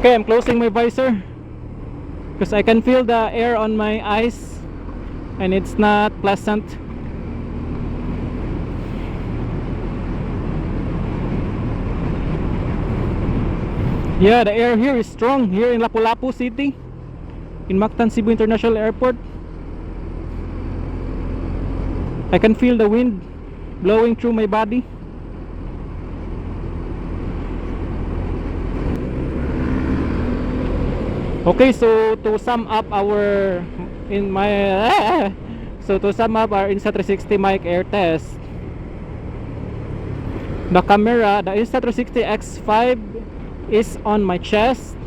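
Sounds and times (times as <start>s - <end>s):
motorcycle riding noise: 0.0s - 45.0s
road rumble: 0.0s - 45.0s
wind rushing in helmet: 7.6s - 14.2s.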